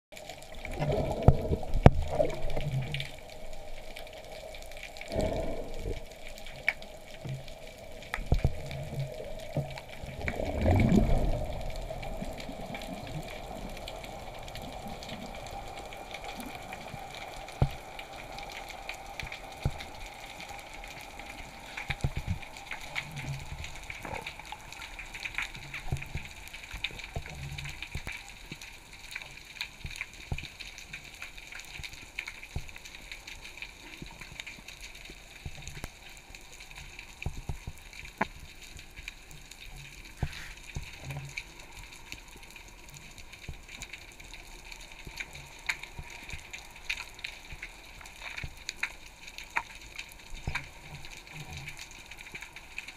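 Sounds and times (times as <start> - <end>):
rush of water: 0.2 - 52.9
underwater hiss: 0.4 - 28.0, 40.0 - 47.9
sharp clicks underwater: 0.6 - 3.1, 36.8 - 42.2.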